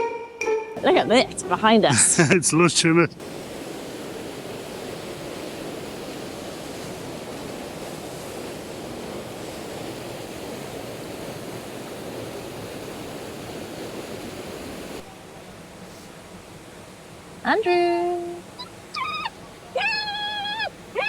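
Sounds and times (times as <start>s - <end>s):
waterfall rushing: 18.4s - 21.0s.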